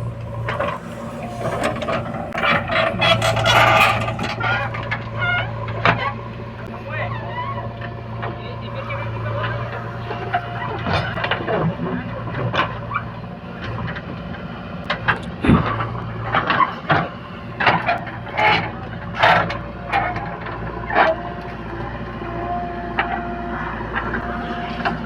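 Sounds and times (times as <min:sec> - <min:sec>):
thin steady whine: 0:00.0 - 0:06.6
clanks and knocks: 0:00.0 - 0:06.7
diesel engine running: 0:00.0 - 0:25.0.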